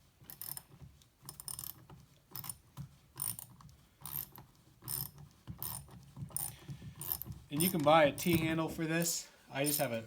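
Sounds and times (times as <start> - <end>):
socket ratchet clicking: 0.3 - 0.7, 1.3 - 2.6, 3.2 - 7.9.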